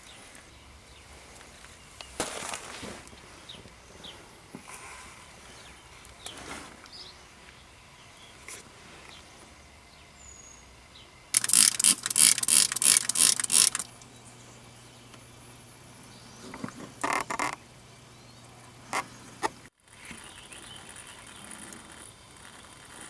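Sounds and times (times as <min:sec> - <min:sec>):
ratchet wrench clicking: 0:11.4 - 0:14.0.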